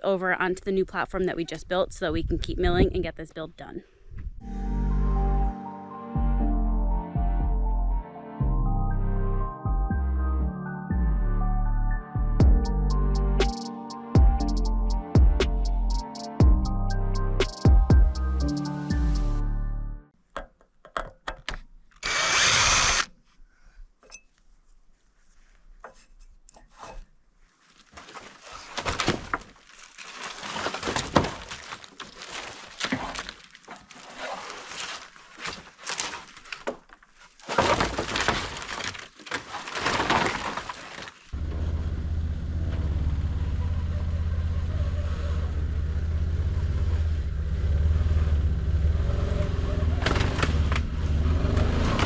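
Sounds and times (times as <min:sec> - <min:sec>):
utility vehicle engine running: 0:41.4 - 0:52.0.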